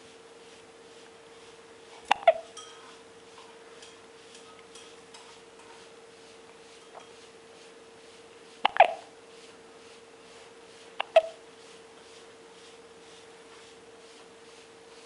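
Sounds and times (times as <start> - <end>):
faint steady hum: 0.0 - 15.0
baby hiccuping: 2.1 - 2.4, 8.7 - 9.1, 11.0 - 11.4.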